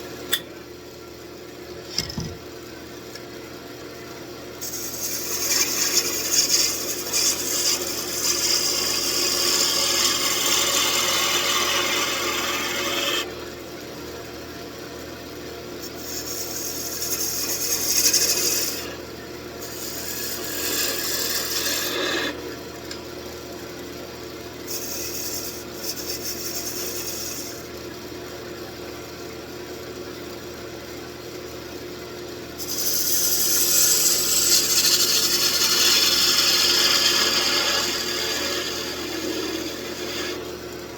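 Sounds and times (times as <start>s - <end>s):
lathe tool cutting wood: 4.6s - 13.3s, 15.9s - 19.0s, 19.6s - 22.4s, 24.7s - 27.6s, 32.6s - 40.7s
wood lathe running: 4.6s - 13.4s, 15.8s - 19.0s, 19.6s - 22.5s, 24.7s - 27.7s, 32.6s - 40.9s.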